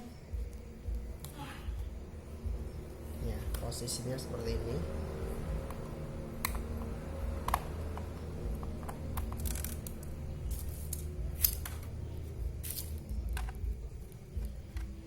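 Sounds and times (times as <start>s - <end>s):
laptop cover and screws clicking: 7.4s - 11.9s.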